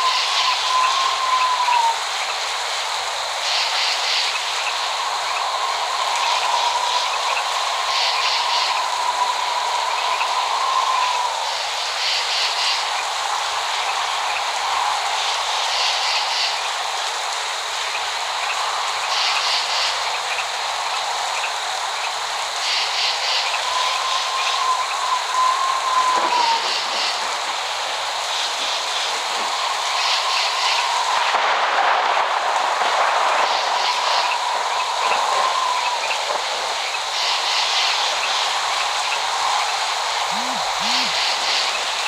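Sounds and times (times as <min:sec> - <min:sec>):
rain hiss: 0:00.0 - 0:42.0
high chirping calls: 0:40.3 - 0:41.4.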